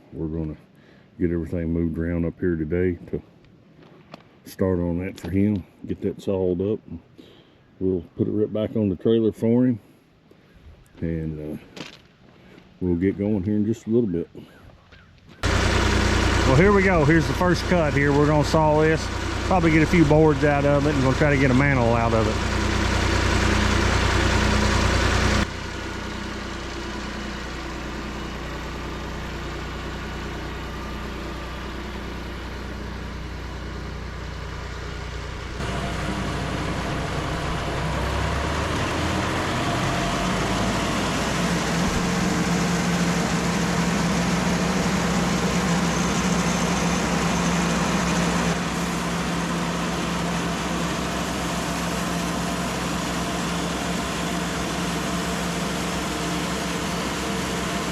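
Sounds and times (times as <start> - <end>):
sawmill engine humming: 15.4 - 57.9.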